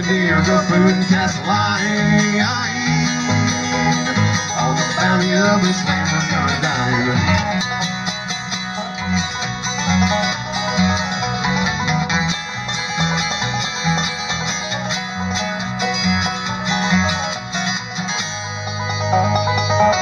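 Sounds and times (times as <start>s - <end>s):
bass line: 0.0s - 20.0s
bluegrass string band: 0.0s - 20.0s
picked banjo: 0.0s - 20.0s.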